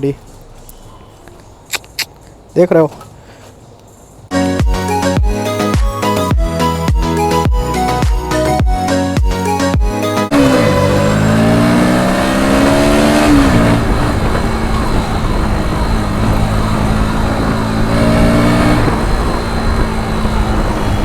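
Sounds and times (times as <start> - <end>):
wind and road noise: 0.0 - 4.3, 10.3 - 21.0
motorcycle engine accelerating: 10.3 - 21.0.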